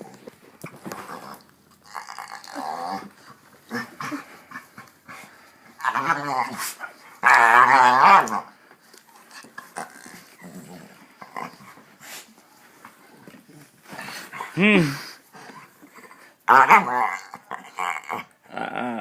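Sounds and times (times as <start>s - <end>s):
dog groaning: 0.0s - 8.6s, 9.2s - 11.9s.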